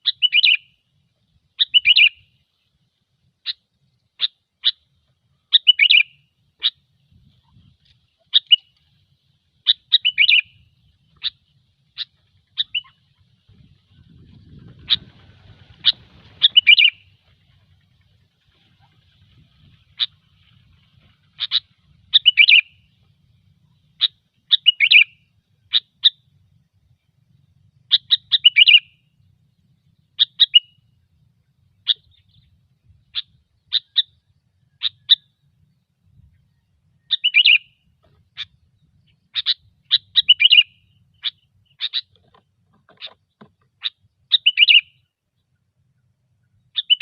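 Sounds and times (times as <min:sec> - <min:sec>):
bulbul chirping: 0:01.6 - 0:02.3, 0:04.2 - 0:06.8, 0:08.2 - 0:08.8, 0:09.6 - 0:13.3, 0:15.9 - 0:17.2, 0:18.1 - 0:26.6, 0:27.6 - 0:35.4, 0:36.9 - 0:43.2, 0:43.8 - 0:45.1, 0:46.6 - 0:47.0.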